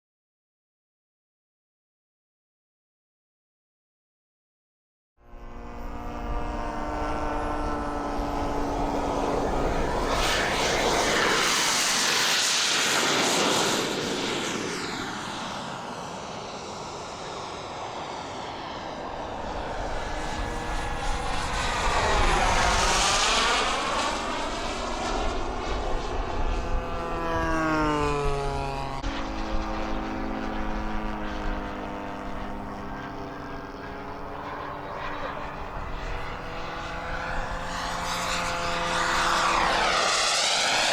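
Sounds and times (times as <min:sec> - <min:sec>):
model airplane engines flying past: 0:05.2 - 0:40.9.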